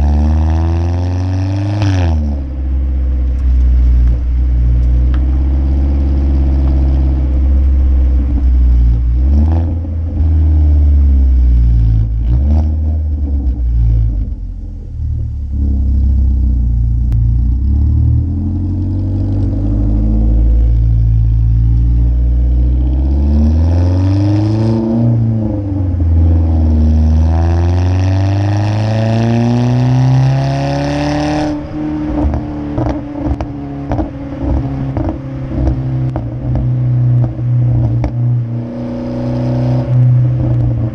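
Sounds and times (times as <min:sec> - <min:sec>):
car engine revving: 0:00.0 - 0:40.9
exhaust crackles and pops: 0:01.6 - 0:23.3, 0:31.5 - 0:38.7, 0:39.8 - 0:40.9.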